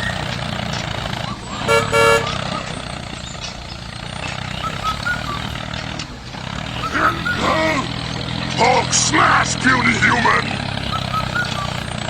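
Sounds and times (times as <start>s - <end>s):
tractor engine running: 0.0s - 12.0s
faint high chirps: 1.2s - 8.6s, 10.6s - 12.0s.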